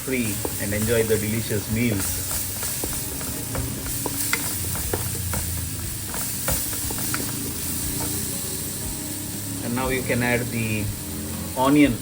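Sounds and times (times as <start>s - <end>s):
spices sizzling in oil: 0.0s - 12.0s
spoon scraping pot: 0.2s - 8.2s.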